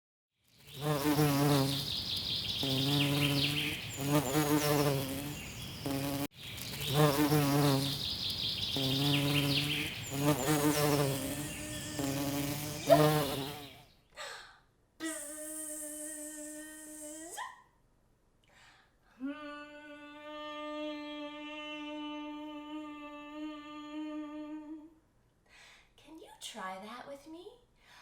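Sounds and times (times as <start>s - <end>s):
wavering insect-like buzzing: 0.6s - 13.8s, 15.0s - 17.4s.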